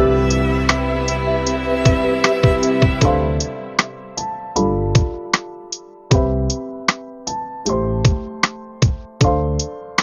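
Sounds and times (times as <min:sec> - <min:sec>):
deep bass: 0:00.0 - 0:05.2, 0:06.2 - 0:06.6
synth chords: 0:00.0 - 0:06.6.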